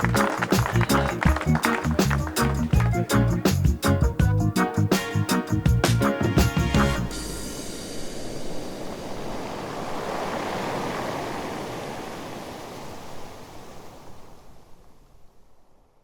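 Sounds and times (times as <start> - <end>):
rushing sea water: 0.0 - 2.8, 7.0 - 15.4.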